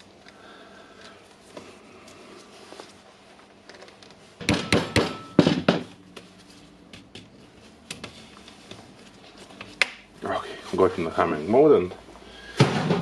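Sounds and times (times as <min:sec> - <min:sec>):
sharp knocks on tool housing: 0:04.4 - 0:05.9.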